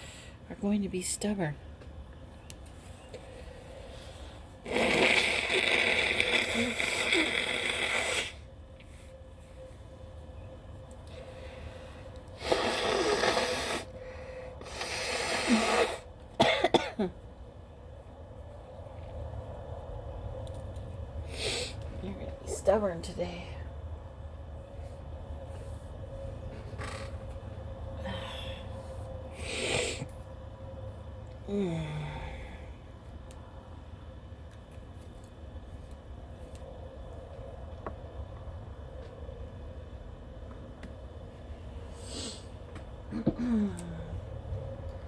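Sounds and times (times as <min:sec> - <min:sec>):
noisy breaths through nose: 0:11.1 - 0:16.2, 0:21.2 - 0:21.9, 0:28.0 - 0:30.1, 0:41.8 - 0:42.7
person sniffing: 0:12.4 - 0:14.0, 0:14.6 - 0:16.0, 0:29.4 - 0:30.1, 0:42.0 - 0:42.6.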